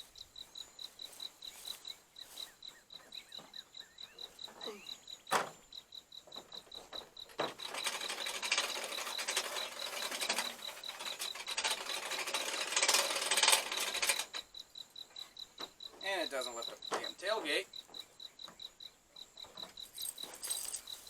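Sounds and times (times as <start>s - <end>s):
crickets chirping: 0.0s - 21.0s
hand winch ratchet clicking: 7.4s - 14.5s.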